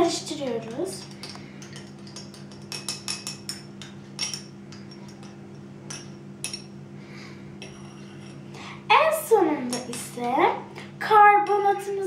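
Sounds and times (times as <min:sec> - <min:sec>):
steady low hum: 0:00.0 - 0:12.0
teaspoon stirring in a glass: 0:01.0 - 0:05.4
spoon clinking against glass: 0:01.2 - 0:06.8.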